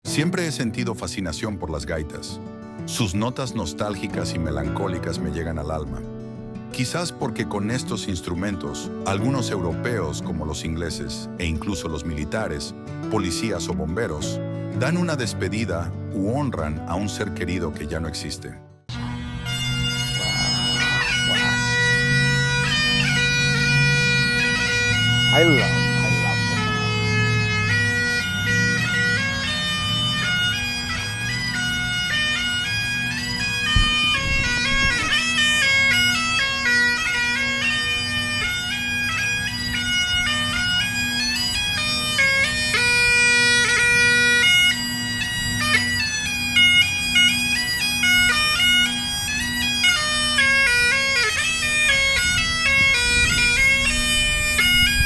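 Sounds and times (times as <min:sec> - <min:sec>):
bagpipes playing melody: 0:18.9 - 0:55.0.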